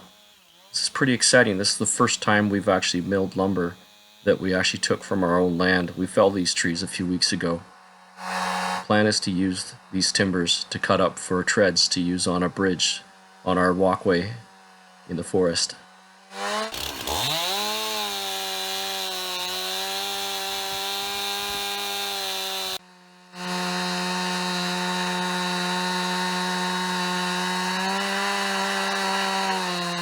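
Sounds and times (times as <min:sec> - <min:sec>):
chainsaw cutting log: 0:00.0 - 0:30.0.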